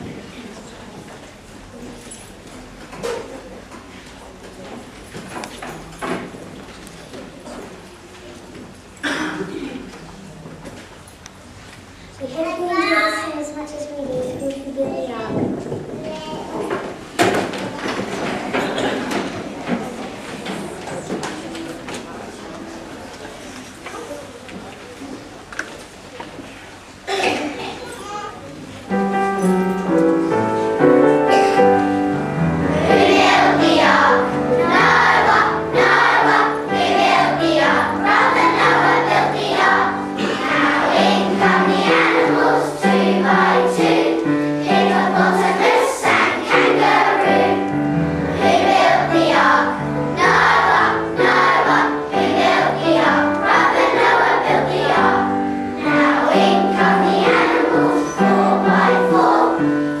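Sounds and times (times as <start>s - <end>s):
musical accompaniment: 28.9s - 60.0s
children singing: 32.6s - 60.0s.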